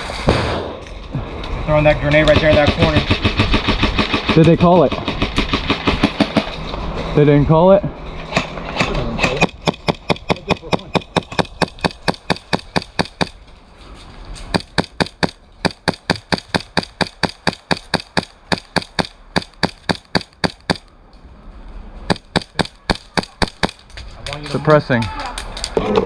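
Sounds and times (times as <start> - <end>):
airsoft gun shots: 0.1 - 0.8, 2.3 - 6.5, 22.1 - 23.8.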